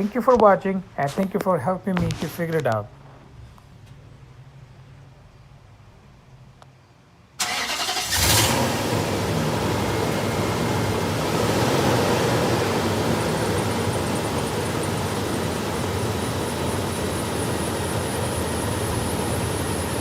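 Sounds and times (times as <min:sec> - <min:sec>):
engine starter cranking: 0:07.4 - 0:08.7
engine running steadily: 0:07.4 - 0:20.0.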